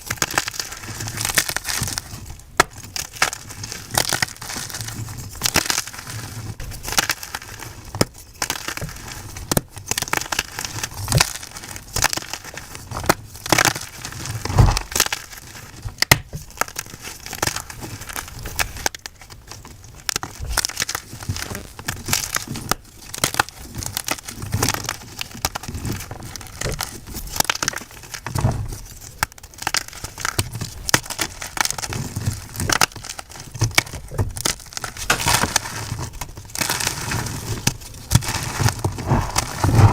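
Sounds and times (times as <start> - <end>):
chalk being crushed: 0.1 - 18.9, 34.7 - 39.9.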